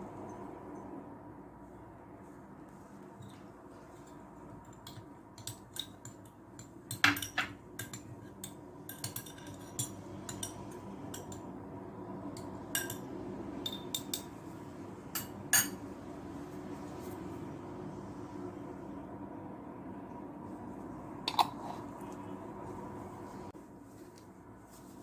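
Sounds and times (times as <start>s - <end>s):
steady low hum: 0.0s - 25.0s
utensils clinking against dishes: 4.7s - 11.5s, 12.7s - 14.3s.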